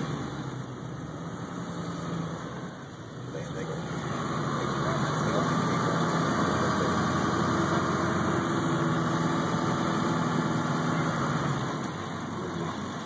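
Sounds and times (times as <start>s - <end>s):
car engine running: 0.0s - 13.0s
road noise: 0.0s - 13.0s.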